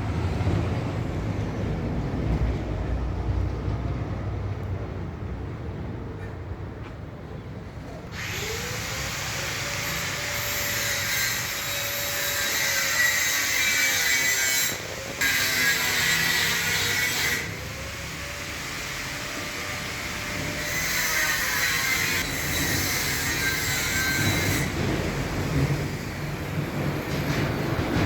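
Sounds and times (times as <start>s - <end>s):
power tool grinding: 8.1s - 26.2s.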